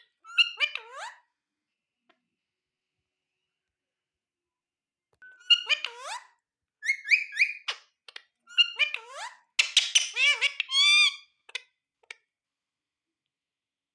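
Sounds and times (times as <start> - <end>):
parrot calling: 0.2 - 1.2, 5.2 - 7.8, 8.5 - 11.6.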